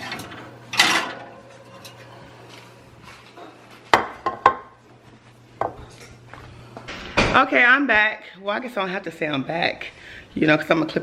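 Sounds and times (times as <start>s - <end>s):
dishes scraping and clattering: 0.0s - 4.7s.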